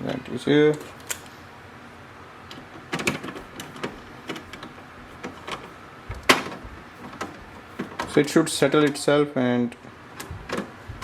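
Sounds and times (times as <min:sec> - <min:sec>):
hard plastic parts clicking: 0:02.5 - 0:08.4.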